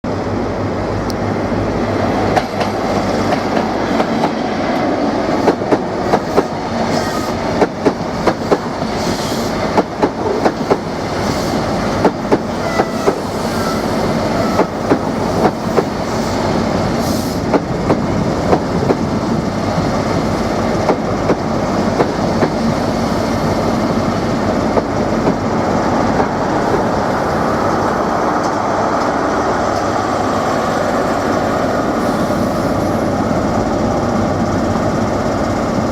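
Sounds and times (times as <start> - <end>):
train rumble: 0.1 - 35.9
train wheels clacking over rail joints: 2.3 - 16.4.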